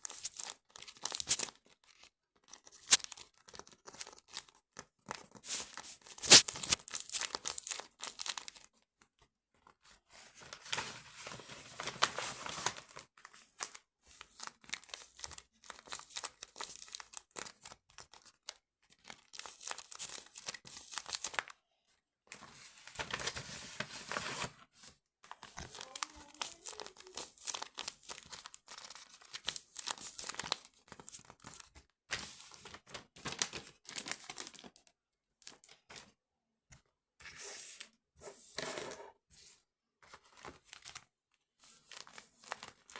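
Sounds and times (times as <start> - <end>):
crinkling and tearing noise: 0.0 - 8.8, 14.4 - 21.5, 25.3 - 31.7.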